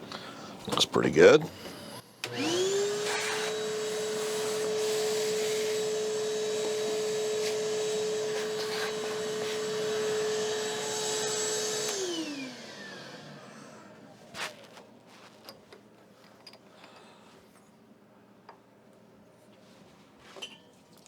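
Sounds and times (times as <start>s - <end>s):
small electric motor whirring: 1.5s - 13.8s.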